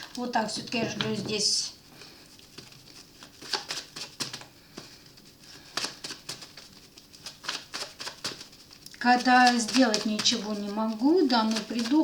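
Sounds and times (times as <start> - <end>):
cards clicking and rustling: 2.5 - 12.0.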